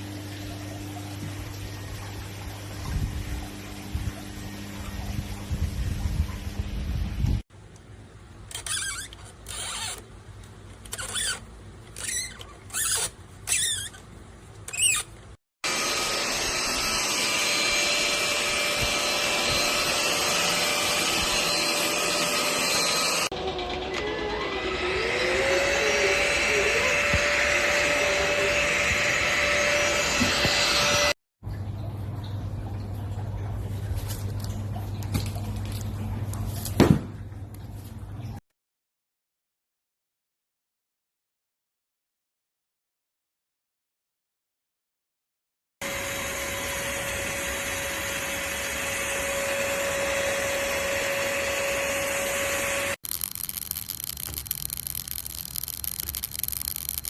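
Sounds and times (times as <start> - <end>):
vacuum cleaner whine: 15.6 - 31.2, 45.8 - 54.7.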